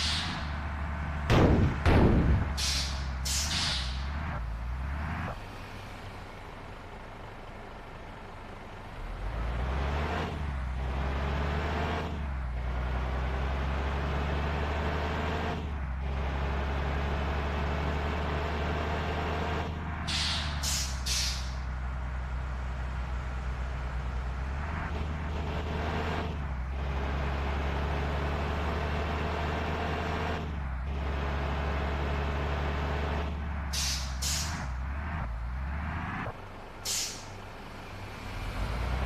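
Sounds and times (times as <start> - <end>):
air brake hisses: 0.0 - 0.4, 2.6 - 4.0, 20.1 - 21.6, 33.7 - 34.6, 36.8 - 37.4
bus diesel engine running: 0.0 - 39.0.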